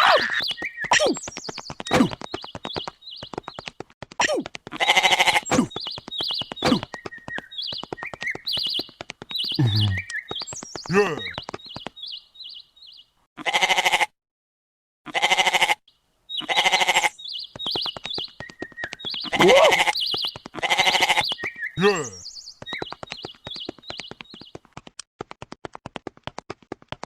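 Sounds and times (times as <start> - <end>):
high bird-like chirps: 0.0 - 3.4, 5.5 - 13.0
animal bleating: 4.7 - 5.4, 13.4 - 14.1, 15.1 - 15.8, 16.4 - 17.2, 19.3 - 20.0, 20.6 - 21.2.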